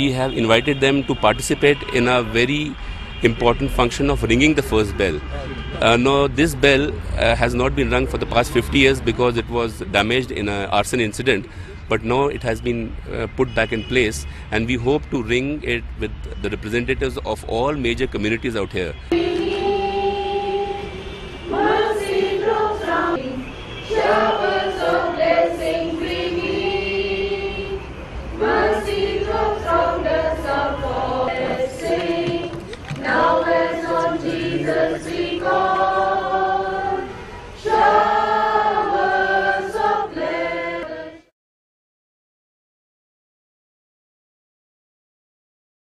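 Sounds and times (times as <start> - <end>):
choir singing a hymn: 19.1 - 41.3.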